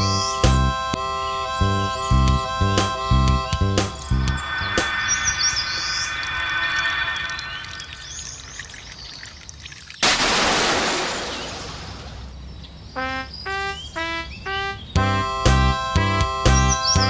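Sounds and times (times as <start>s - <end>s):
electronic warning tone: 1.9s - 8.0s
rushing burst of noise: 3.9s - 8.6s.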